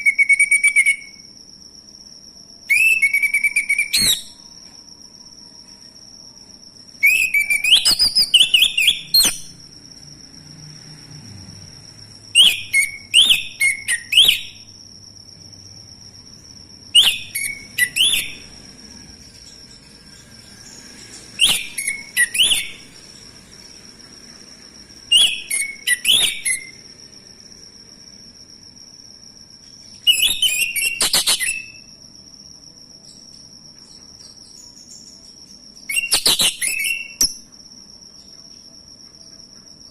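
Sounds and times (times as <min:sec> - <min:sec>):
thrush singing whistled phrases: 0:02.7 - 0:04.4, 0:07.0 - 0:09.6, 0:12.4 - 0:14.7, 0:16.9 - 0:18.5, 0:21.4 - 0:22.9, 0:25.1 - 0:26.8, 0:30.1 - 0:31.9, 0:35.9 - 0:37.4.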